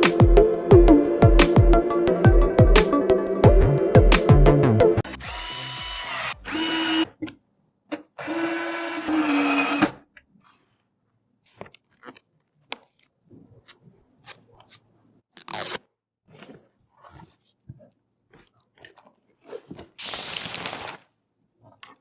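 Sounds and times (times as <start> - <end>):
electric screwdriver running: 5.1 - 7.1.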